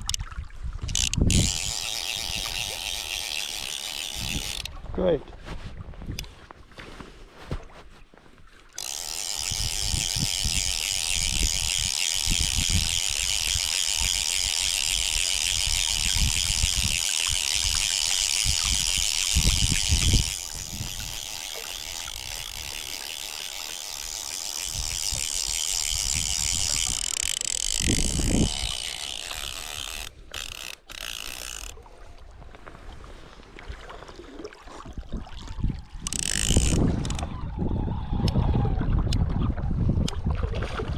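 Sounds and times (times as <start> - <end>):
fly reel ratchet buzzing: 0.0 - 0.2, 0.8 - 4.8, 8.8 - 31.8, 36.0 - 37.3
wind rumble on microphone: 4.1 - 6.6, 9.4 - 21.3, 27.7 - 30.0, 34.8 - 40.9.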